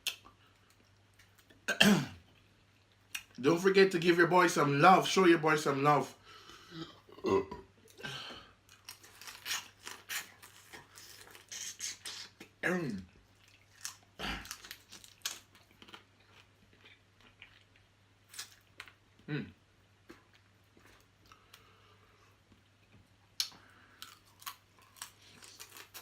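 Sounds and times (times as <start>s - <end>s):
person chewing with wet smacks: 2.2s - 3.4s, 8.7s - 19.3s, 19.9s - 21.7s, 22.4s - 26.0s.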